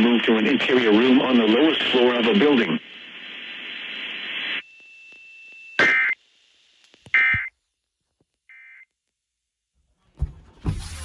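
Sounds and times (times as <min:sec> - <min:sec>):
radio hiss: 0:00.0 - 0:04.6.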